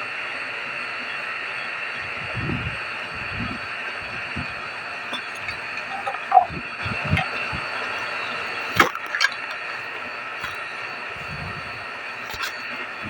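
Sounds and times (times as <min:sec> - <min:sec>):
vacuum pump running: 0:00.0 - 0:13.0.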